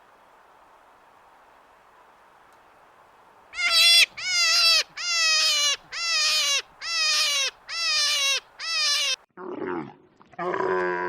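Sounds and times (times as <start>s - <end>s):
animal calling: 3.6s - 9.2s.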